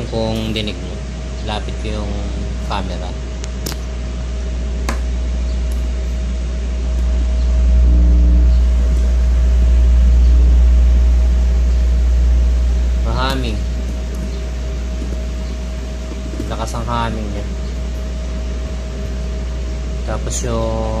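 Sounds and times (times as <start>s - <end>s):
low mains hum from speakers: 0.0s - 21.0s
faint high steady tone: 7.3s - 11.8s.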